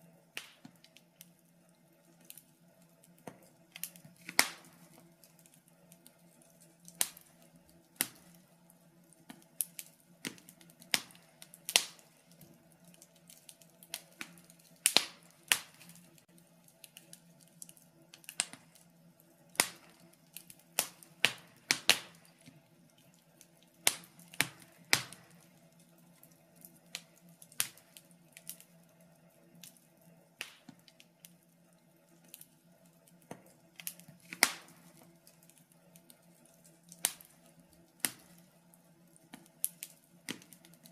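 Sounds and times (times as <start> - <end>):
faint steady low hum: 0.0 - 40.9
wood fire crackling: 0.0 - 40.9.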